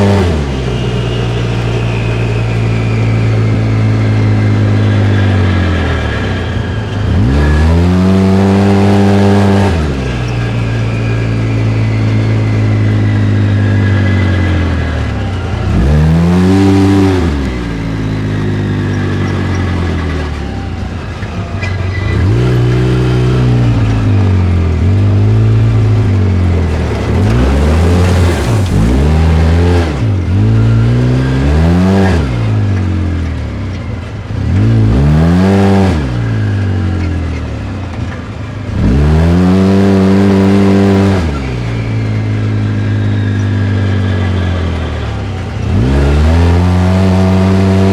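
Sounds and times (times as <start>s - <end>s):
engine revving: 0.0s - 47.9s
wooshing grinding noise: 22.0s - 31.0s.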